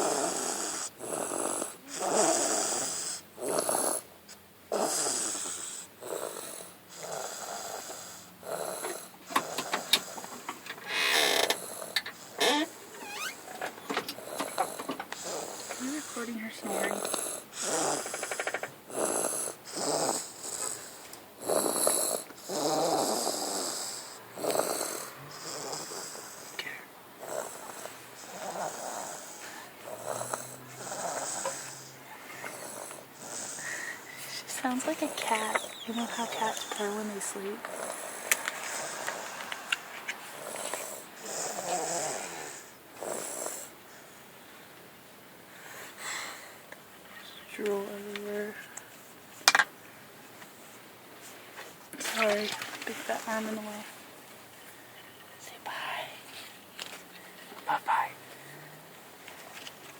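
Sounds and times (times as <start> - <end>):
baby snoring: 0.0 - 4.1, 4.7 - 43.8.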